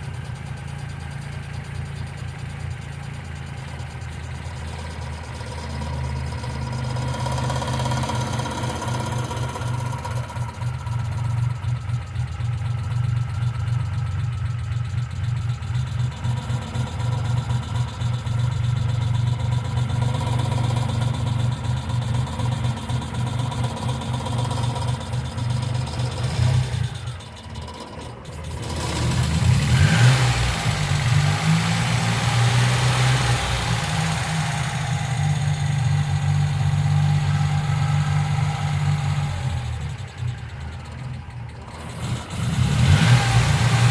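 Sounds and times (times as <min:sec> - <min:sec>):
car engine idling: 0:00.0 - 0:43.9.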